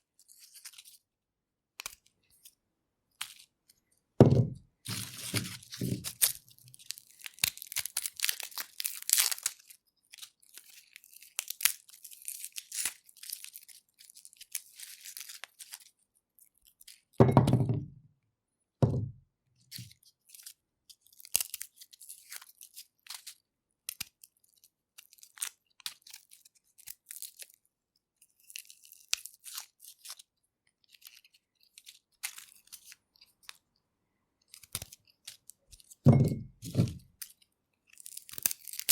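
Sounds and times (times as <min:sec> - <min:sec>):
garlic skin crackling and tearing: 0:01.8 - 0:02.1, 0:03.2 - 0:03.5, 0:04.9 - 0:15.9, 0:19.8 - 0:27.6, 0:28.2 - 0:33.6, 0:34.5 - 0:36.0, 0:36.6 - 0:38.9
dull knocks: 0:04.2 - 0:04.6, 0:17.2 - 0:18.0, 0:18.8 - 0:19.2, 0:36.1 - 0:37.0.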